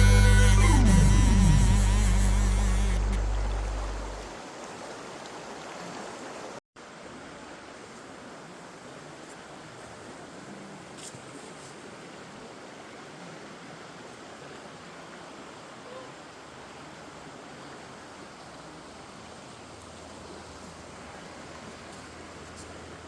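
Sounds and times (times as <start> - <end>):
low hum: 0.0 - 4.3.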